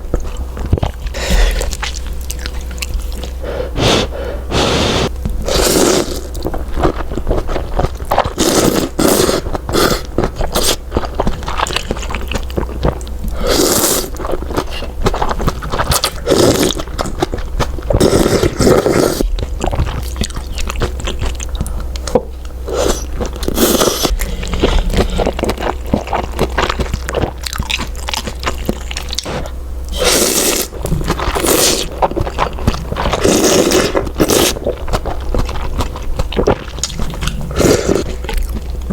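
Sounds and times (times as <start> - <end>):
chewing with wet mouth clicks: 1.7 - 3.4, 19.2 - 29.3, 30.8 - 38.9.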